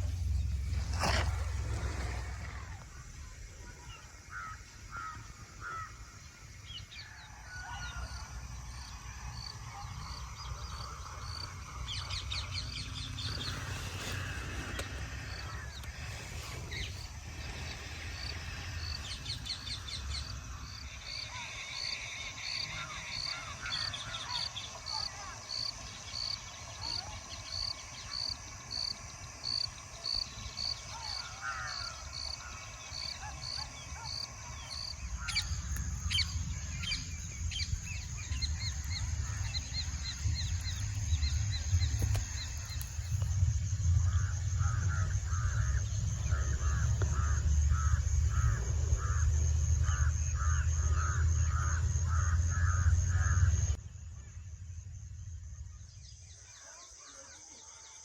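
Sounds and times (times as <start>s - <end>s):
low rumble: 0.0s - 3.4s, 33.8s - 56.4s
crows cawing: 4.3s - 6.0s, 30.9s - 34.2s, 44.1s - 53.7s.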